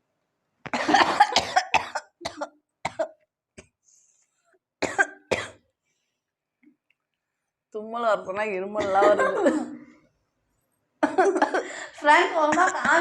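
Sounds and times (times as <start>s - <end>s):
person coughing: 0.7s - 3.8s, 4.8s - 5.7s, 11.4s - 13.0s.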